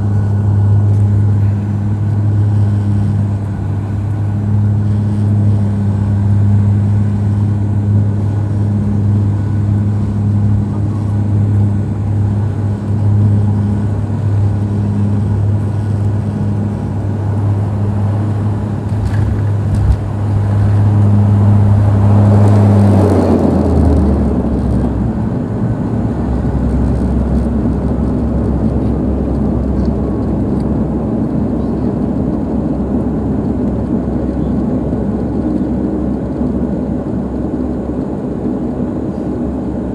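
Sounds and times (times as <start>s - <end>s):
airliner engine drone: 0.0s - 39.9s
reverse thrust roar: 0.0s - 39.9s
runway rollout rumble: 0.0s - 39.9s
wheels touching down thump: 18.8s - 20.1s.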